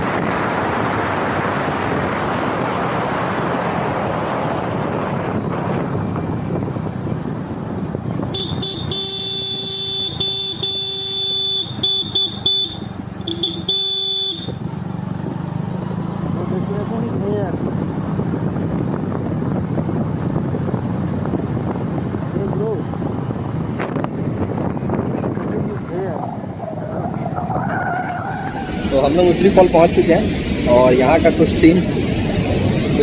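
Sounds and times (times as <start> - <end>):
road travel rushing noise: 0.0 - 33.0
vehicle horn honking: 8.3 - 14.6.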